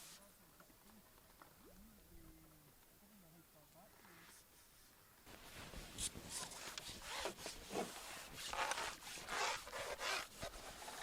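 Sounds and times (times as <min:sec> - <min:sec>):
rubbing and scraping swishes: 0:05.4 - 0:11.0.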